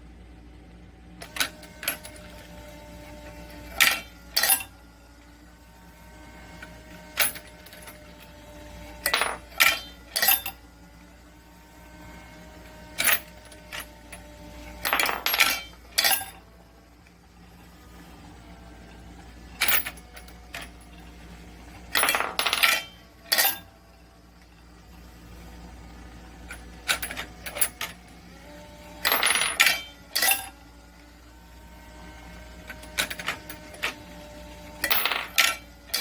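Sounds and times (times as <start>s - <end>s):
brass cases clinking: 14.8s - 16.4s, 21.9s - 23.6s, 34.8s - 36.0s.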